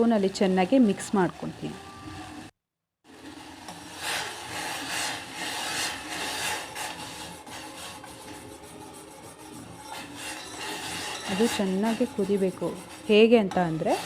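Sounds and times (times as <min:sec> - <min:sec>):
spoon scraping a pot: 0:03.7 - 0:14.0.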